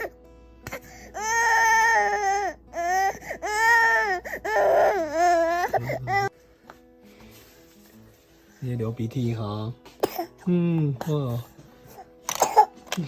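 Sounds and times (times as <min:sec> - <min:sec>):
baby crying: 0:00.7 - 0:06.3.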